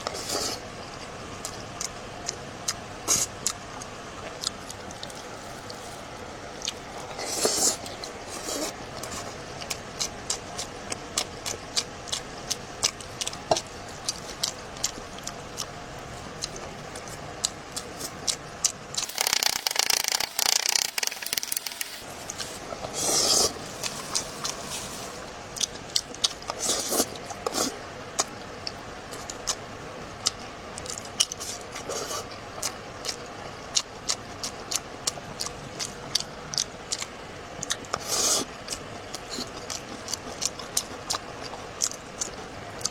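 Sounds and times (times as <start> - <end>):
chewing with wet mouth clicks: 1.0 - 5.8, 6.6 - 22.4, 25.5 - 29.6, 30.2 - 42.9
loud hissing noise: 19.0 - 25.4.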